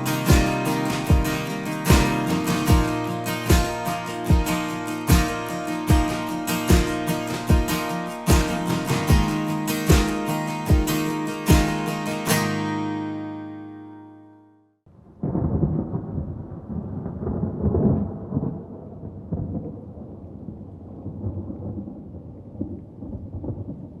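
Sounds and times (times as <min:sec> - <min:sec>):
acoustic guitar strummed chord: 0:00.0 - 0:14.6
distant thunder rumble: 0:15.1 - 0:24.0.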